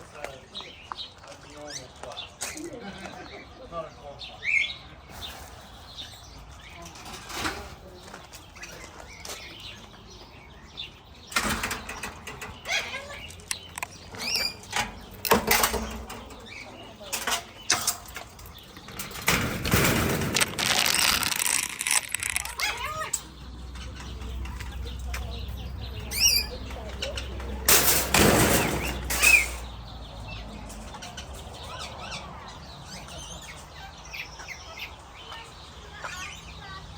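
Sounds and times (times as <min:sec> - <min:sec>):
parrots squawking and chirping: 0:12.4 - 0:17.0, 0:17.6 - 0:27.4, 0:28.6 - 0:36.7.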